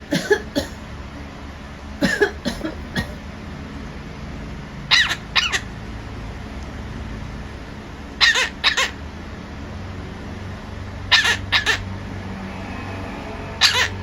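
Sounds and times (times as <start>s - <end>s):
parrot imitating a cough: 0.0s - 0.8s, 2.0s - 3.2s.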